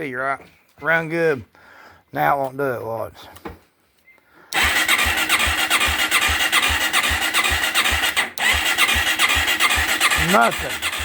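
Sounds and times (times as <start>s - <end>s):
electric starter cranking engine: 4.6s - 11.0s.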